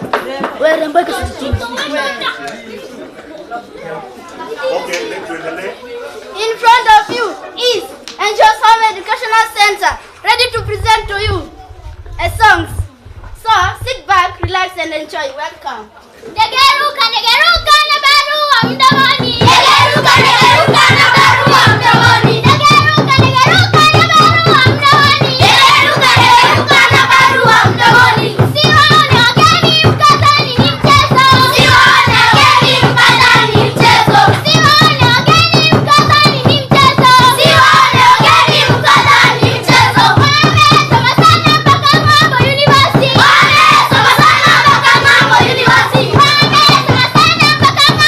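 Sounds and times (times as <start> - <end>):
children singing: 18.7 - 48.0.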